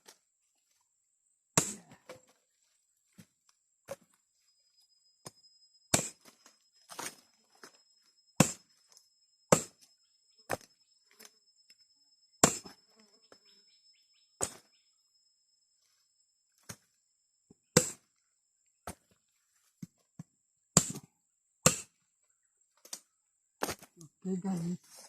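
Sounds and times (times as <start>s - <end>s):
blade chopping woody stem: 1.6s - 1.9s, 5.9s - 7.2s, 8.4s - 8.7s, 9.5s - 9.9s, 12.4s - 12.7s, 14.4s - 14.7s, 20.8s - 22.0s
insect buzz: 4.4s - 16.2s.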